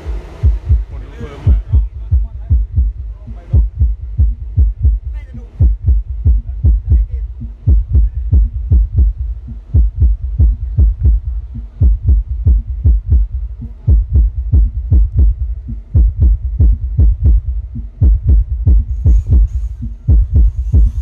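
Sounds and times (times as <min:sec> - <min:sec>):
bass-heavy beat over subwoofers: 0:00.0 - 0:21.0.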